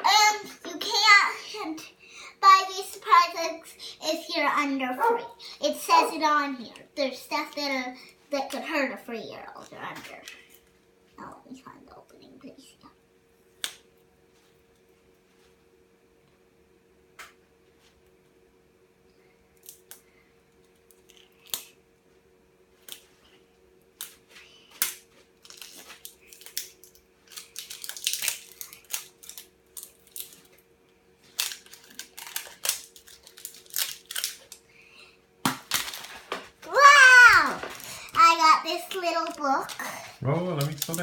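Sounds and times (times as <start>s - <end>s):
packaging ripping and snapping: 24.8s - 30.6s, 31.2s - 34.6s, 35.4s - 41.0s
packaging crinkling and rustling: 25.2s - 34.6s, 35.6s - 41.0s
packaging clicks: 25.4s - 30.5s, 31.3s - 34.6s, 40.6s - 41.0s.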